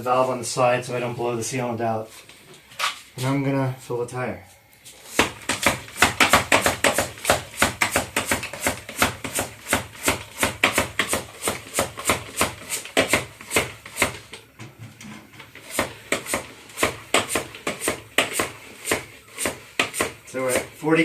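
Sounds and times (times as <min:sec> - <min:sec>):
foot pump strokes: 0:04.8 - 0:14.4, 0:15.4 - 0:20.8.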